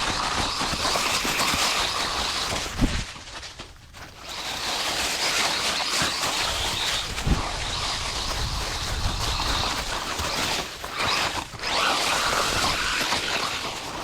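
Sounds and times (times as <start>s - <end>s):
remote control truck whirring: 4.1s - 14.0s.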